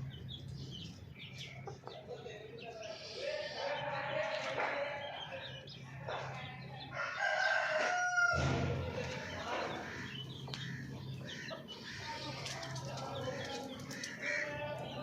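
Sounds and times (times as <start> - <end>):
hens clucking: 0.0 - 15.0
rooster crowing: 6.9 - 8.6.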